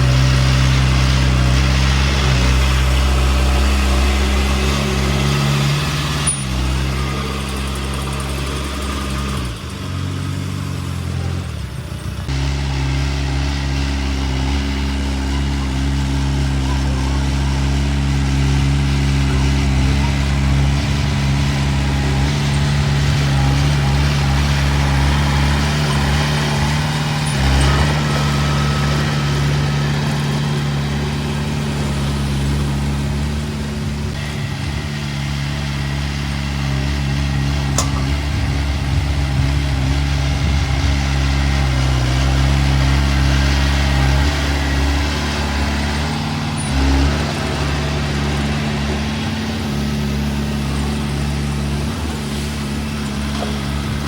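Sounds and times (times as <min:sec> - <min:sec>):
earthmoving machine diesel engine: 0:00.0 - 0:54.0
sharp click: 0:37.8 - 0:38.2.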